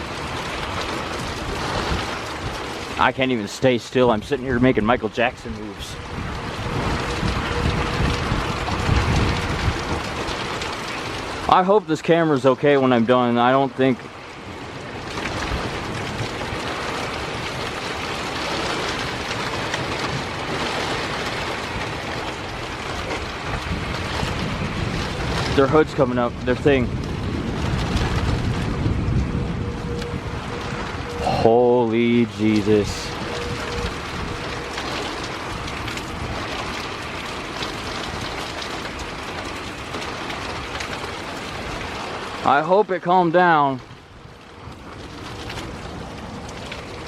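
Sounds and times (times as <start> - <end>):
heavy wind-driven rain: 0.0 - 47.0
heavy rain hissing: 23.2 - 42.5.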